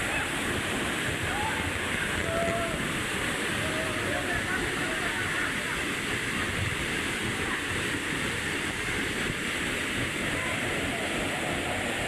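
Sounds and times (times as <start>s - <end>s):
waterfall rushing: 0.0s - 12.0s
faint voices: 10.2s - 12.0s.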